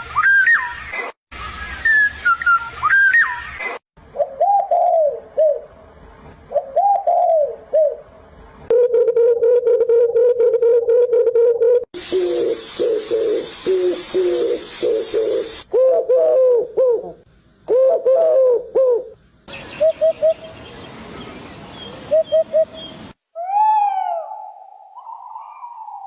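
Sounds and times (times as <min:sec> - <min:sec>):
birds cooing: 0:04.1 - 0:05.7, 0:06.5 - 0:08.1, 0:08.7 - 0:20.7, 0:21.8 - 0:26.0
recording hiss: 0:12.0 - 0:23.4.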